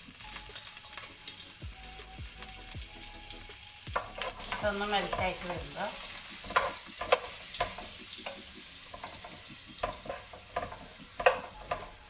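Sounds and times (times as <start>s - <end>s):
butter sizzling in a pan: 0.0s - 12.0s
utensil scraping and knocking pan: 4.0s - 12.0s.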